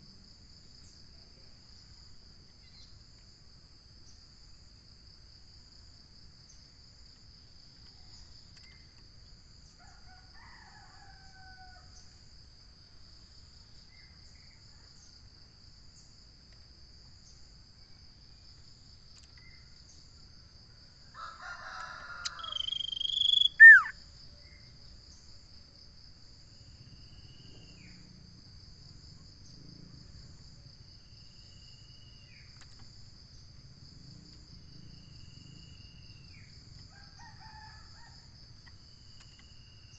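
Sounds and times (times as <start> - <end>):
high insect trill: 16.9 - 39.9
faint bird whistles: 22.6 - 23.9
loud call with falling whistle: 22.6 - 23.9.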